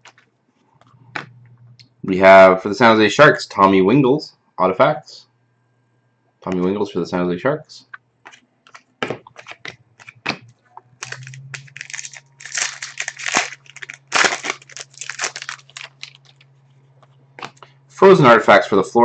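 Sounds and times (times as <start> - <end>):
steady low hum: 0.0 - 8.3, 9.0 - 19.0
foil wrapper crinkling and tearing: 8.3 - 10.2, 11.0 - 16.5.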